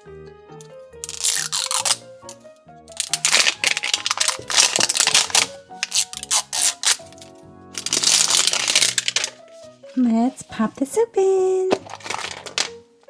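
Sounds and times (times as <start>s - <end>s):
background music: 0.0s - 13.0s
plastic wrapper crinkling and tearing: 1.0s - 9.7s, 11.7s - 12.8s.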